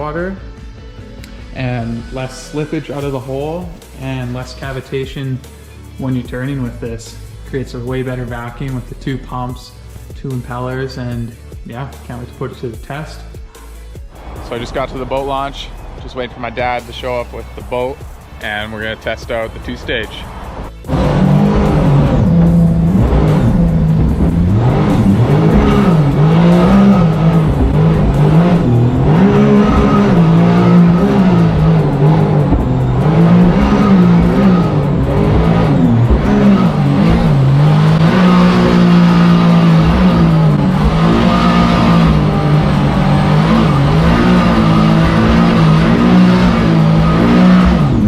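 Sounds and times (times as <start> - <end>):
jet boat engine revving: 14.2 - 48.0.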